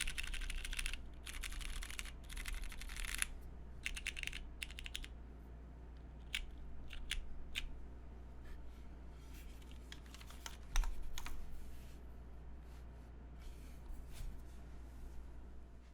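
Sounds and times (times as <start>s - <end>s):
mechanical keyboard keystrokes: 0.0s - 5.1s, 6.3s - 7.7s, 9.9s - 11.4s.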